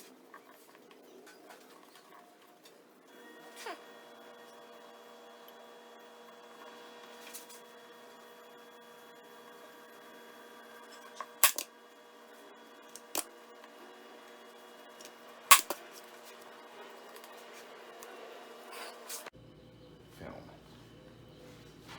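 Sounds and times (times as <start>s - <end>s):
steady electrical hum: 0.0s - 21.9s
staple gun snapping: 11.4s - 11.6s, 15.5s - 15.8s.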